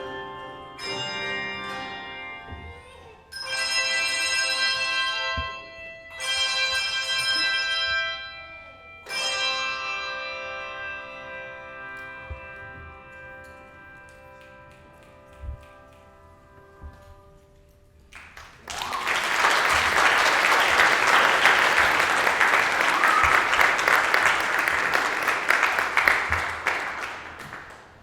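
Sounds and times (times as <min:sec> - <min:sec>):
handbell choir notes: 0:00.0 - 0:16.3
congregation applause: 0:18.1 - 0:28.0.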